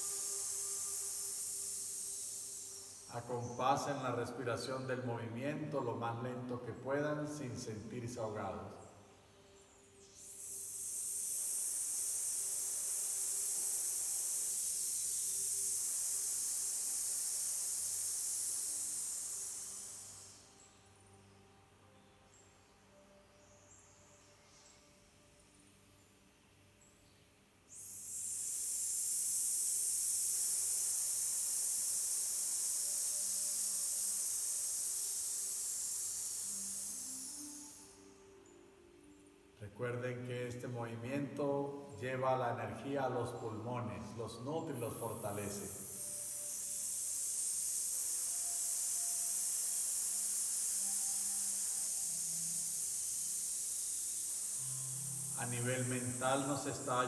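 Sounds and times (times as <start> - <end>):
person hissing through teeth: 0.0 - 3.7, 10.3 - 20.7, 27.7 - 38.0, 44.6 - 57.0.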